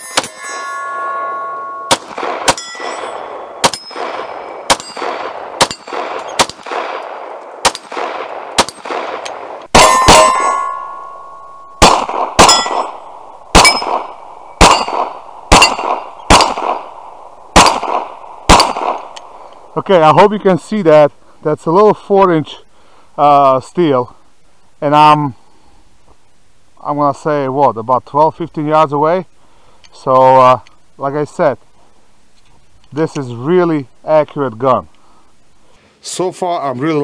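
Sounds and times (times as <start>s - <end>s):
bullets clanging on steel plate: 0.0s - 6.4s, 9.2s - 11.8s, 12.4s - 16.2s
pistol shots: 1.9s - 11.2s, 11.8s - 19.4s.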